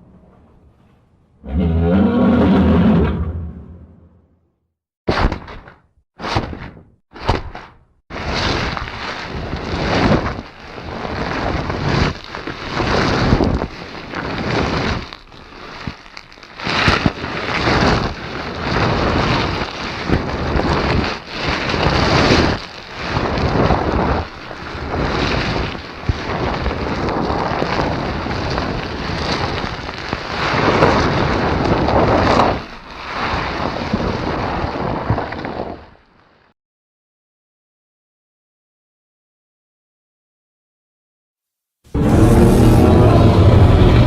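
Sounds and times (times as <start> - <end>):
loud rushing and crashing bursts: 41.9 - 44.0.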